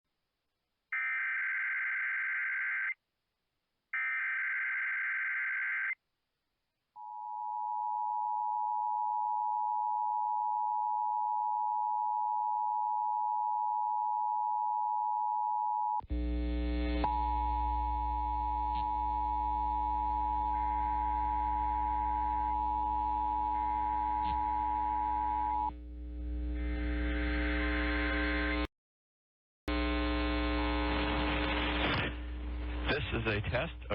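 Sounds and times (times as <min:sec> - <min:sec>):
low buzz: 0:16.1 - 0:28.7, 0:29.7 - 0:32.9.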